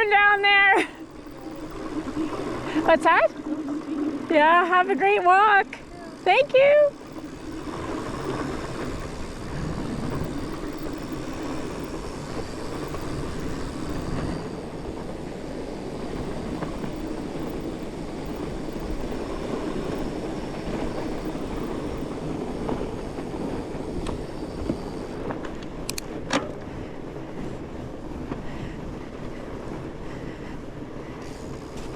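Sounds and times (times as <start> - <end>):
bike rattling: 0.0 - 31.9
bike tyres rumbling on dirt: 0.0 - 31.9
sharp clicks: 25.4 - 26.1.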